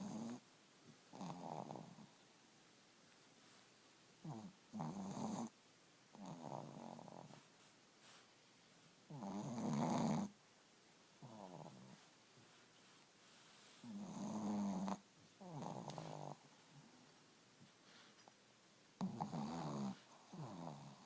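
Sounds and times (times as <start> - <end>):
dogs snoring: 0.0 - 0.4, 1.1 - 2.2, 4.2 - 7.5, 9.1 - 10.4, 11.2 - 12.1, 13.8 - 16.9, 19.0 - 21.0.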